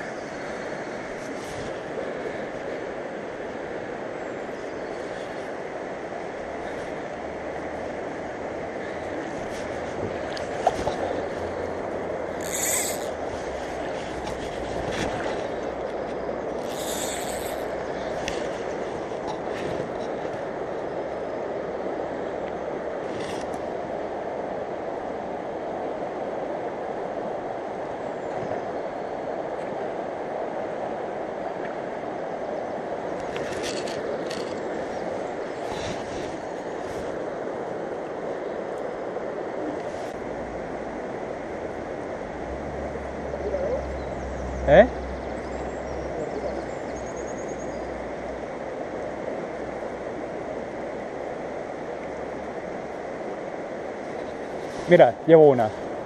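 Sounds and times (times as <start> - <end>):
river water rushing: 0.0 - 28.2, 28.8 - 56.0.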